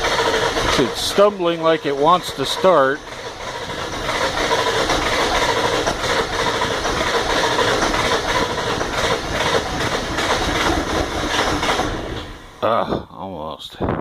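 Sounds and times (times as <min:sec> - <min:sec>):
diesel engine cranking: 0:00.0 - 0:13.2.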